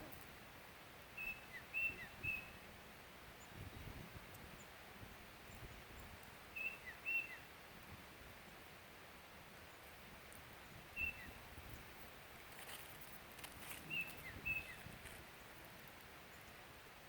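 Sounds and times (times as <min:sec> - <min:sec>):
faint bird chirps: 0:01.1 - 0:02.6, 0:04.5 - 0:07.5, 0:10.6 - 0:11.9, 0:13.8 - 0:15.6
soft clicks or rustles: 0:12.4 - 0:16.5.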